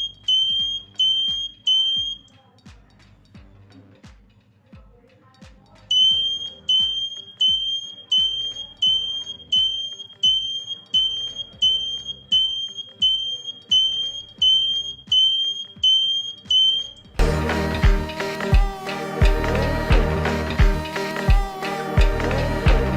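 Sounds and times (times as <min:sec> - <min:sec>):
background music: 0:00.0 - 0:22.9
buzzer short high beeps: 0:00.3 - 0:02.3, 0:06.0 - 0:16.9.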